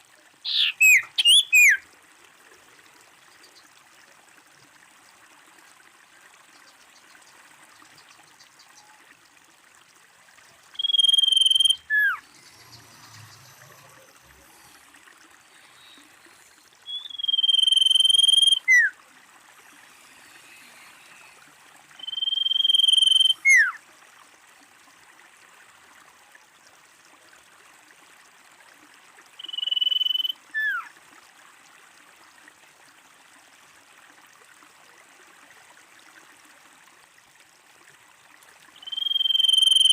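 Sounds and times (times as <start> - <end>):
bird calling whistle: 0.5 - 1.8, 10.8 - 12.2, 16.9 - 18.9, 22.0 - 23.8, 29.4 - 30.9, 38.8 - 39.9.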